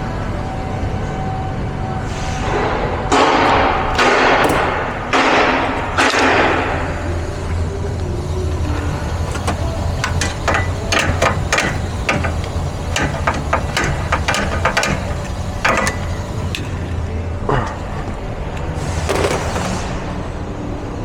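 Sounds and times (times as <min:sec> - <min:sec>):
steady low hum: 0:00.0 - 0:21.0
sharp metallic clicks and clinks: 0:08.6 - 0:17.0.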